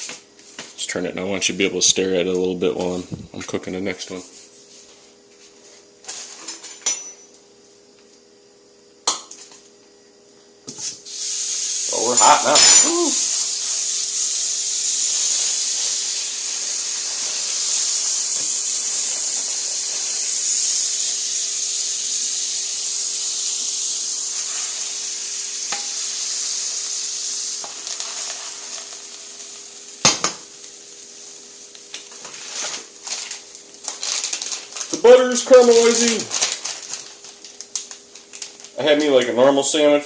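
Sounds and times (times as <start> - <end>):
butter sizzling in a frying pan: 10.7 - 39.4.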